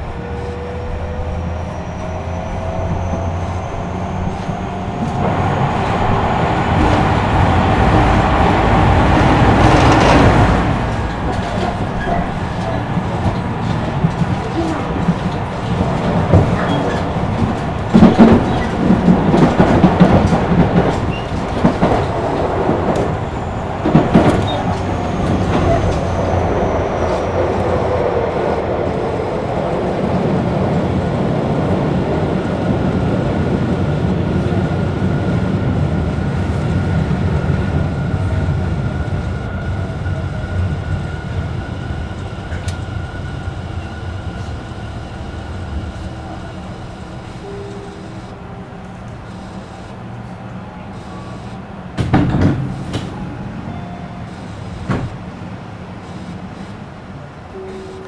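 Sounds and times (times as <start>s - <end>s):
train running with high whine: 0.0s - 58.0s
train wheels knocking over rail joints: 2.8s - 28.0s, 51.9s - 53.7s, 54.3s - 55.5s.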